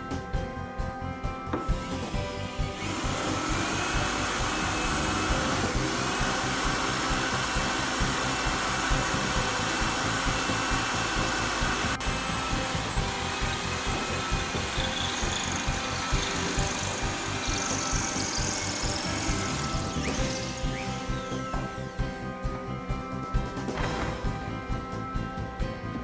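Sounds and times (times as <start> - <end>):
background music with a beat: 0.0 - 26.0
power tool motor whining: 1.6 - 22.0.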